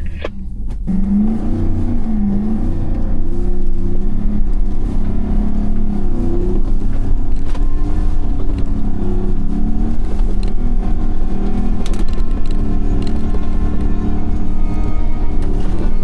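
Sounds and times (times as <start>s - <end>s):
off-road engine under load: 0.0s - 16.0s.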